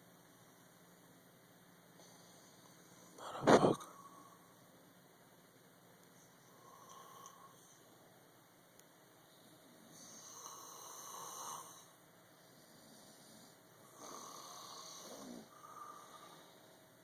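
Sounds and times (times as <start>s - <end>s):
person snoring faintly: 9.8s - 11.9s, 12.5s - 16.8s.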